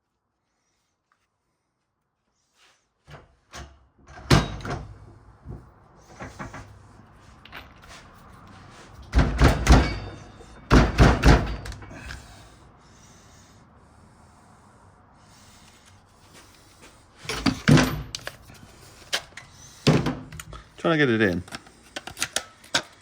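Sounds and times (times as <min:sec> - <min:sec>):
hard knocks and clunks of parts: 0:03.1 - 0:08.0, 0:09.0 - 0:12.3, 0:17.2 - 0:20.8.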